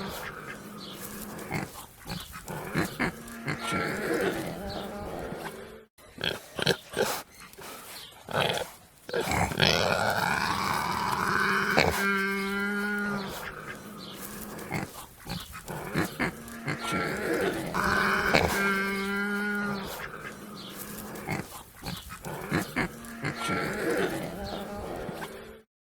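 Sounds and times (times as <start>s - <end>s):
pig grunting: 0.0s - 25.7s.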